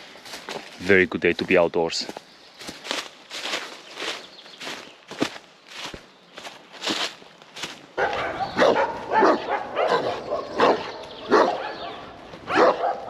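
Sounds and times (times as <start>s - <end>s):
footsteps on path: 0.0s - 13.0s
large dogs barking: 7.9s - 13.0s.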